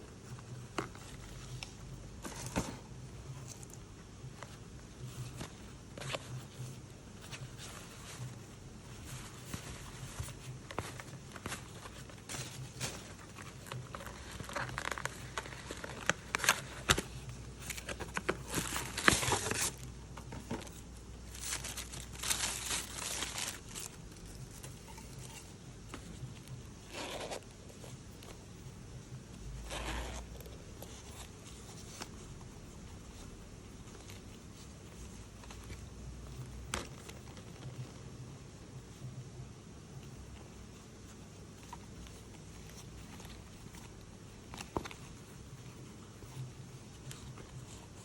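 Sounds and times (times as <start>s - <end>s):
paper and plastic rustling: 0.2s - 3.8s, 4.4s - 28.4s.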